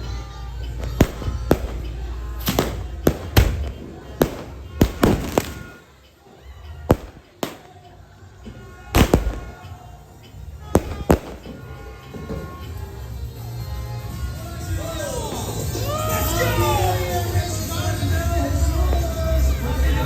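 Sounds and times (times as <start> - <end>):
fireworks exploding: 0.0 - 6.1, 6.8 - 7.9, 9.0 - 9.9, 10.6 - 12.0
faint music: 0.0 - 20.0.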